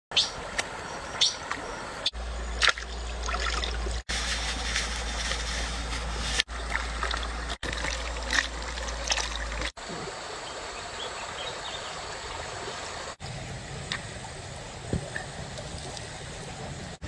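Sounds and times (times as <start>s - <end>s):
water trickling and splashing: 0.3s - 13.2s.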